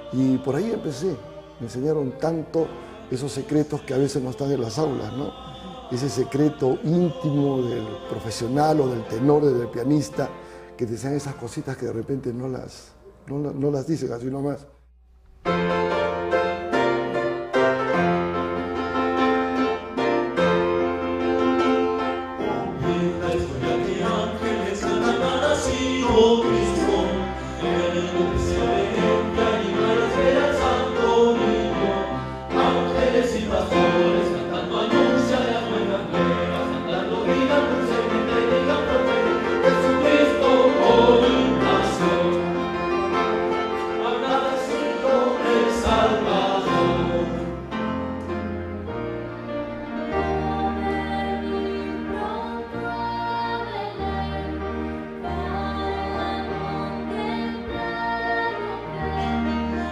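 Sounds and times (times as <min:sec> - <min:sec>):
choir singing: 0:00.0 - 0:12.4, 0:15.8 - 0:59.9
instrumental accompaniment: 0:15.0 - 0:59.9.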